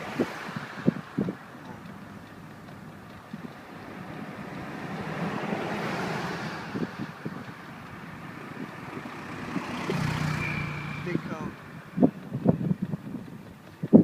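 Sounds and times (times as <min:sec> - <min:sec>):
road traffic hum: 0:00.0 - 0:14.0
vehicle passing: 0:00.0 - 0:14.0.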